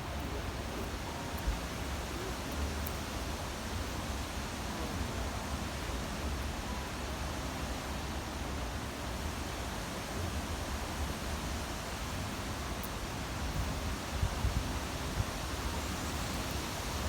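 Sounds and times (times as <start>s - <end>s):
wind blowing across microphone: 11.8s - 17.0s.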